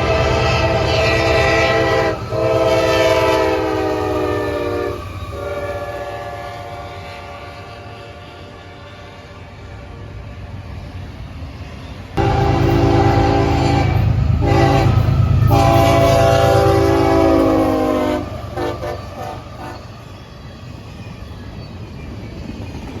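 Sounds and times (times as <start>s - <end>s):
locomotive engine rumble: 0.0s - 8.7s, 9.4s - 23.0s
locomotive air horn blasts: 0.0s - 9.4s, 12.2s - 19.9s.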